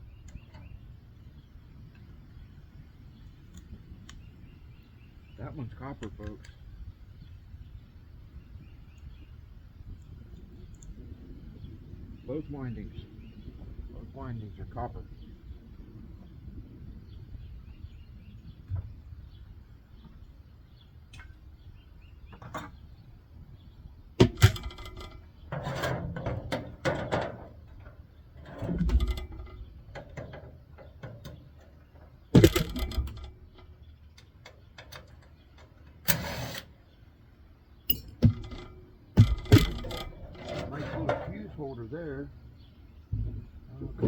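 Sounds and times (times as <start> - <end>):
metal parts clicking and clanking: 24.2 - 36.8, 37.9 - 41.6.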